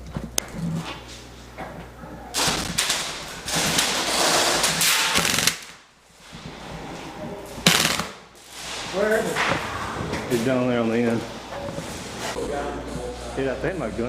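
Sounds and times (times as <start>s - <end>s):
airsoft guns full-auto firing: 2.4s - 5.8s, 7.6s - 8.2s.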